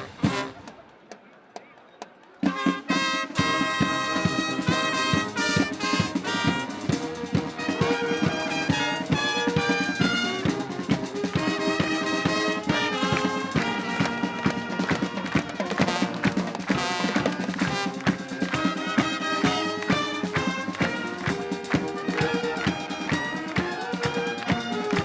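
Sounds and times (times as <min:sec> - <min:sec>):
marching drum beat: 0:00.0 - 0:00.8, 0:02.4 - 0:25.0
trumpets and trombones: 0:00.0 - 0:01.2, 0:02.3 - 0:25.0.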